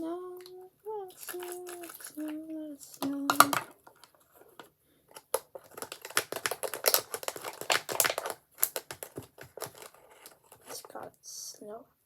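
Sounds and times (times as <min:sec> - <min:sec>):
packaging crinkling: 0:01.2 - 0:02.3, 0:02.9 - 0:10.9.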